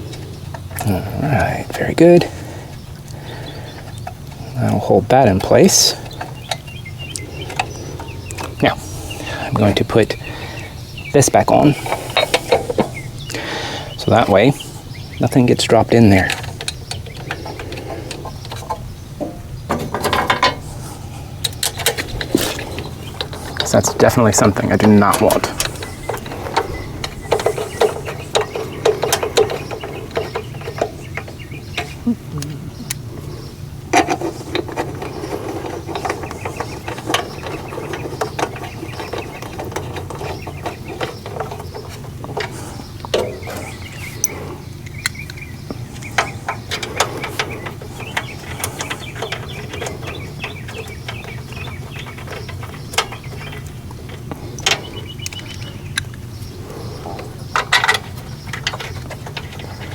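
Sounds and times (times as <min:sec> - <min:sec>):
steady low hum: 0:00.0 - 0:59.9
clinks of tools and metal parts: 0:15.2 - 0:32.0.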